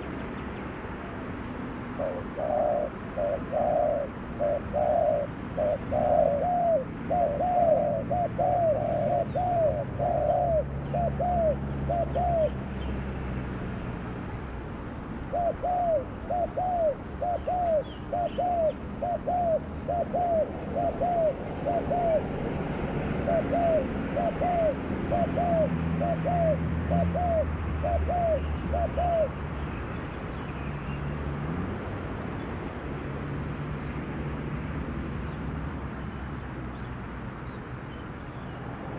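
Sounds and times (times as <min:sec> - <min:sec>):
dove cooing: 0:01.8 - 0:12.6, 0:15.2 - 0:29.4.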